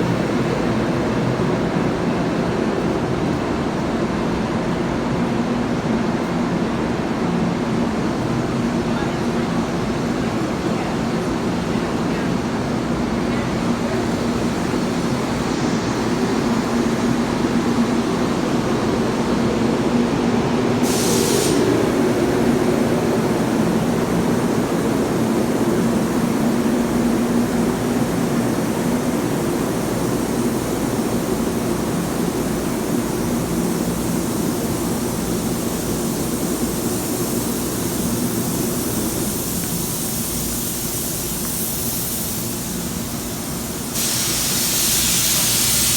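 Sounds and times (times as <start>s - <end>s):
train humming: 0.0s - 45.9s
high hiss: 13.0s - 45.9s
sharp air hiss: 13.9s - 45.9s.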